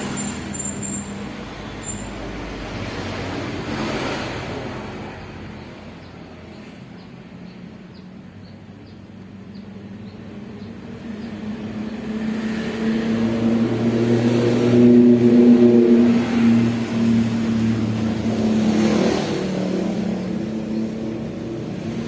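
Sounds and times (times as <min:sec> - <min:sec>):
motorcycle engine revving: 0:00.0 - 0:05.7, 0:10.4 - 0:22.0.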